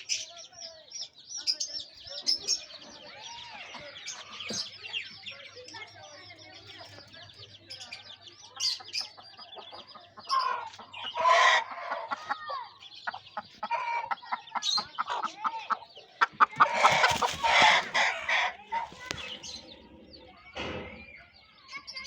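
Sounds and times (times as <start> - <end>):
chickens clucking: 0.0 - 22.0
small birds chirping: 0.0 - 22.0
loud harsh chicken calls: 10.4 - 19.6.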